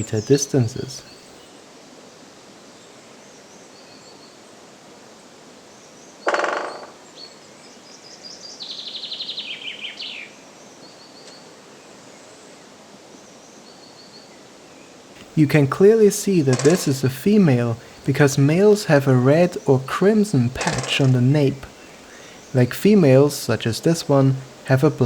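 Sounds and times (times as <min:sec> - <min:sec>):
woodpecker drumming on wood: 0:06.3 - 0:07.0, 0:15.2 - 0:25.0
faint high chirps: 0:15.2 - 0:25.0
songbird singing falling notes: 0:15.2 - 0:25.0.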